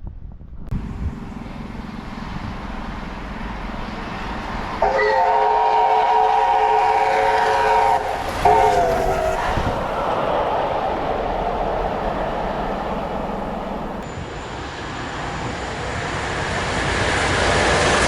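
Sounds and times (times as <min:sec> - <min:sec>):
steam locomotive running: 0:00.8 - 0:18.0.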